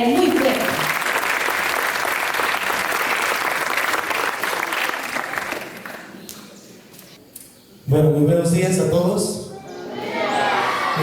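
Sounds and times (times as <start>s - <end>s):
audience applauding: 0.0s - 6.2s.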